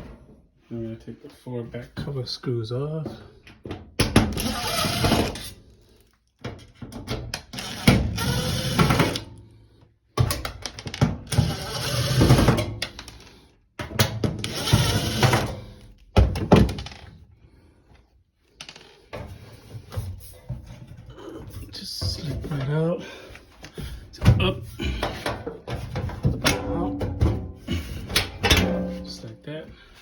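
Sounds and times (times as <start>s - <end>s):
power drill backing out screws: 4.2s - 5.5s, 7.4s - 9.2s, 11.3s - 12.7s, 14.4s - 15.7s.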